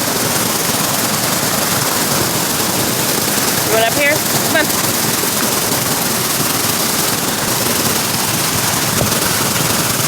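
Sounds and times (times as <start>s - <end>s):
loud rush of falling water: 0.0s - 10.0s.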